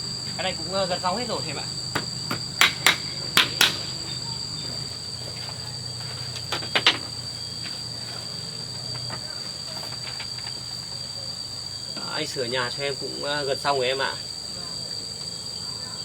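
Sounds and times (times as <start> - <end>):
insect chirring: 0.0 - 16.0
sharp knocks: 1.9 - 4.0.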